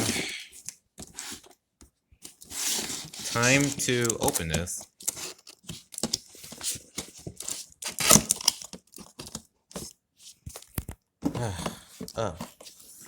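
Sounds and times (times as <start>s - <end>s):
packaging ripping and crinkling: 2.6s - 9.4s.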